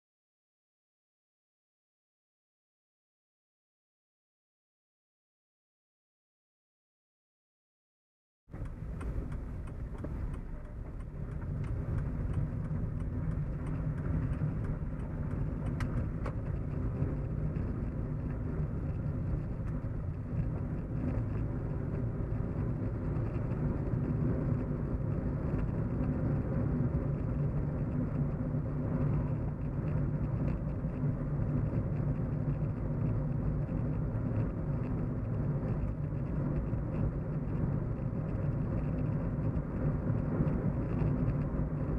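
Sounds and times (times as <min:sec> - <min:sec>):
car road and engine hum: 0:08.5 - 0:41.9
faint ticks: 0:08.6 - 0:21.5.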